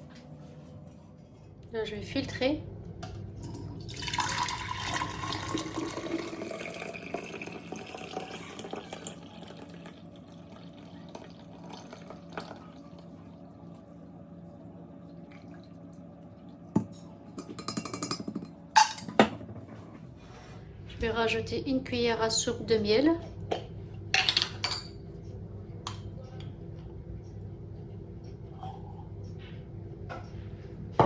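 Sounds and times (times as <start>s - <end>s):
liquid pouring through strainer: 3.4s - 12.7s.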